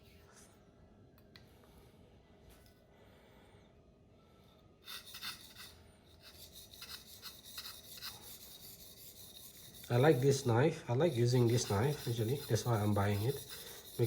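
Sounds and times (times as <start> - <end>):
knife scraping on whetstone: 4.9 - 14.0.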